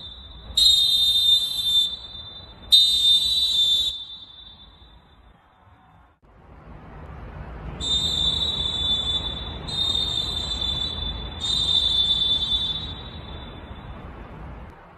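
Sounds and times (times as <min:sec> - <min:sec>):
shrill referee whistle blasts: 0:00.0 - 0:05.4, 0:07.8 - 0:14.0
steady rushing background noise: 0:05.2 - 0:11.4, 0:12.7 - 0:14.9.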